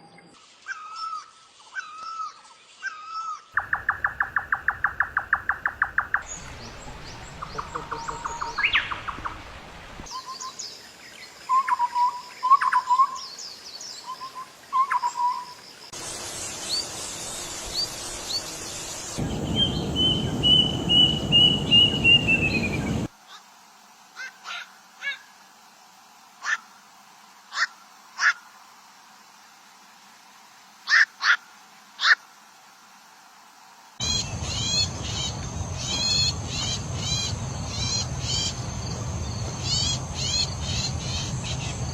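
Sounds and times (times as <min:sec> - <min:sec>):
falling run of bird notes: 0:19.2 - 0:23.1.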